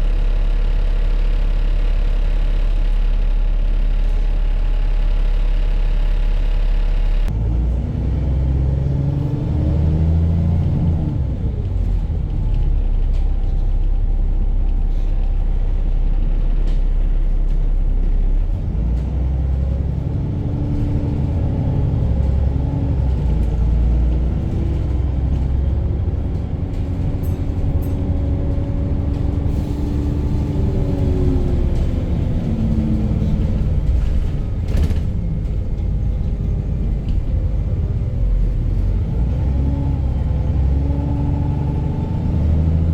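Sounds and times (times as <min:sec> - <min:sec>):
engine knock: 0:00.0 - 0:07.3, 0:14.7 - 0:39.0
diesel bus engine rumbling: 0:00.0 - 0:42.9.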